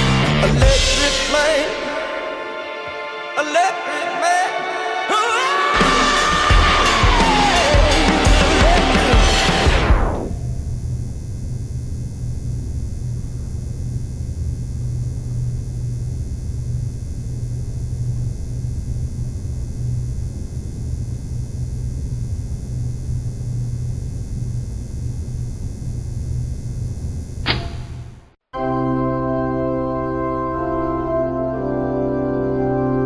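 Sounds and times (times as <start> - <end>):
low hum with rumble: 9.9 - 28.3
short click: 27.4 - 28.2.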